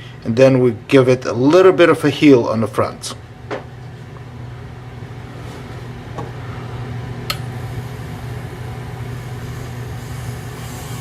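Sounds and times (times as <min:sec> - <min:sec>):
small electric motor humming: 0:07.4 - 0:11.0.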